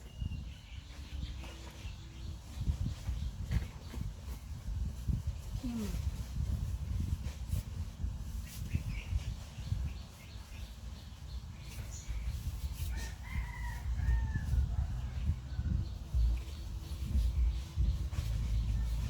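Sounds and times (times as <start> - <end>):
rooster crowing: 12.9 - 15.9
low rumble: 13.8 - 19.0.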